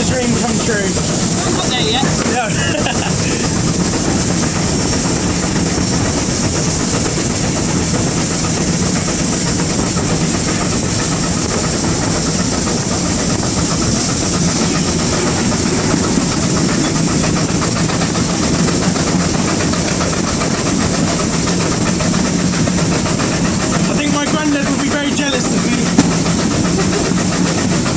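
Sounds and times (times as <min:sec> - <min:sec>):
steam hissing: 0:00.0 - 0:27.9
steam locomotive engine rumble: 0:00.0 - 0:27.9
train wheels on rails: 0:00.0 - 0:27.9.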